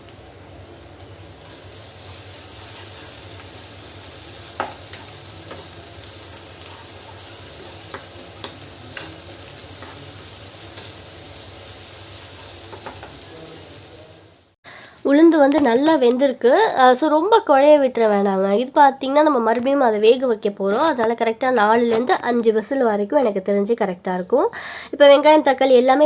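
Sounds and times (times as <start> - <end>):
vegetables sizzling in oil: 0.0 - 17.6.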